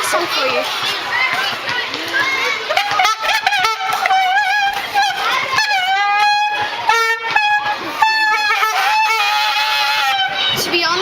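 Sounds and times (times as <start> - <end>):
shrill wobbling tune played badly: 2.7 - 11.0.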